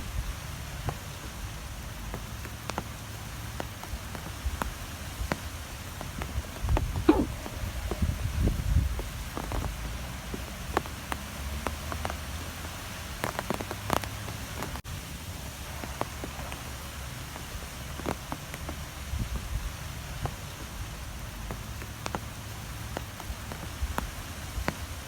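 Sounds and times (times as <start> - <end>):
strong gusty wind: 6.0 - 9.7.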